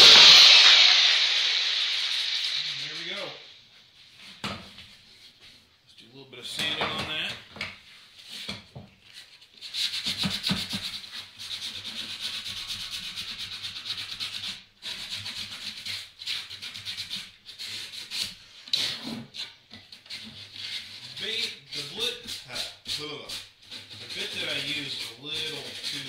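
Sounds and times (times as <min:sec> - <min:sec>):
hand sanding wood: 0:09.6 - 0:26.0.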